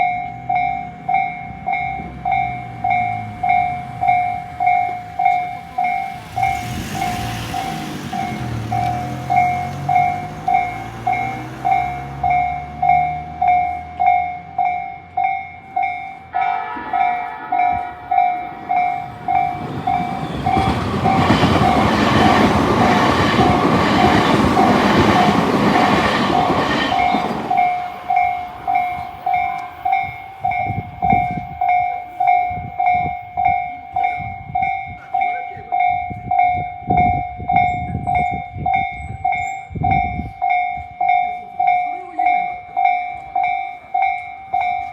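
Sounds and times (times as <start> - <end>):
electronic level crossing bell: 0.0 - 44.9
train rumbling over crossing: 0.0 - 44.9
train wheels clickety-clack: 1.9 - 14.0, 17.8 - 38.4.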